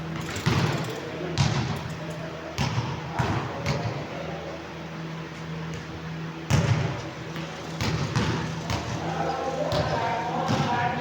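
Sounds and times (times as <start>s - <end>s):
steady low hum: 0.0s - 11.0s
basketball thuds: 7.8s - 8.9s.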